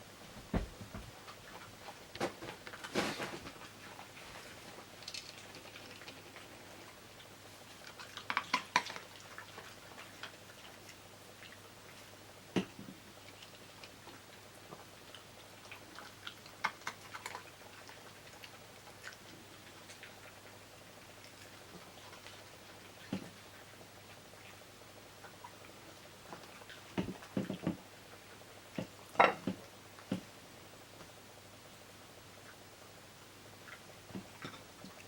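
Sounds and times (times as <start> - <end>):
dog crunching vegetables: 2.7 - 6.9, 7.7 - 11.0.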